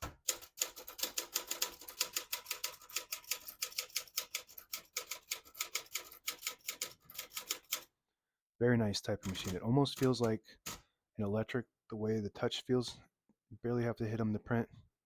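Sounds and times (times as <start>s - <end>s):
manual typewriter typing: 0.0s - 7.9s, 9.2s - 10.8s.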